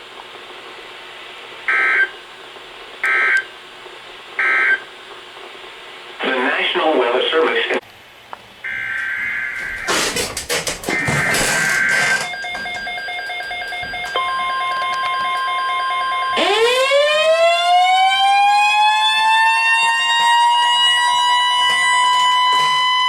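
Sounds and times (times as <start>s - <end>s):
steady warning tone: 8.6s - 23.0s
buzzing alert data burst: 10.9s - 16.8s
siren winding up: 10.9s - 23.0s.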